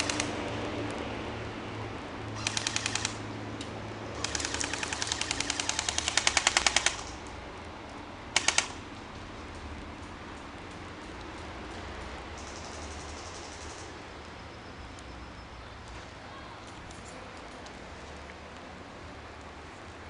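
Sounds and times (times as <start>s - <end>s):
airsoft guns firing automatic bursts: 0.0s - 0.3s, 2.4s - 3.2s, 4.2s - 7.2s, 8.4s - 8.8s.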